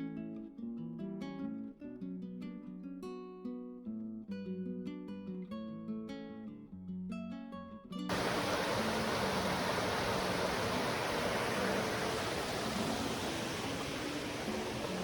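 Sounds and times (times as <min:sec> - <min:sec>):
loud rushing noise: 0:08.1 - 0:15.0.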